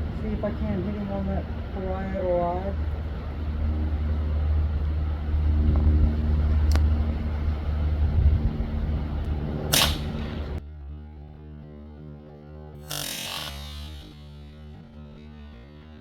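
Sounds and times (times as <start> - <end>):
steady low rumble: 0.0 - 16.0
air rifle shot: 9.6 - 10.6, 12.9 - 14.4
music: 10.6 - 16.0.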